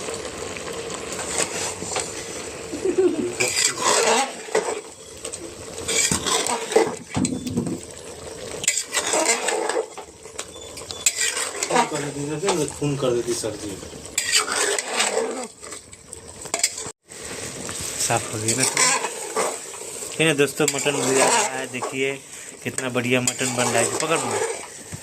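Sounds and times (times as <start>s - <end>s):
metal spoon scraping a pot: 1.2s - 2.1s, 3.4s - 12.8s, 14.0s - 16.9s, 18.1s - 24.8s.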